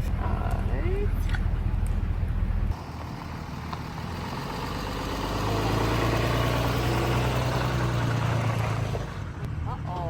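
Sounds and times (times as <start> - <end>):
vehicle engine humming: 0.0 - 10.0.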